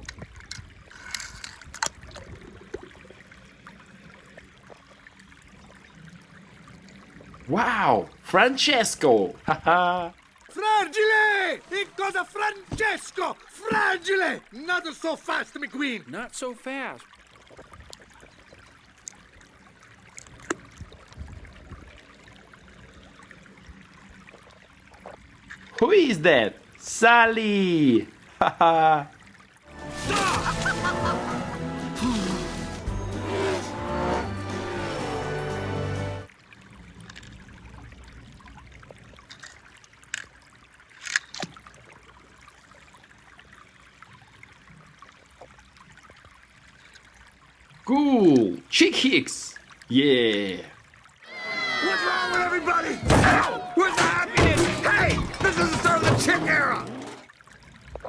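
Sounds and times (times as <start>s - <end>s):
plastic toy clicks and rattles: 0.0s - 1.9s.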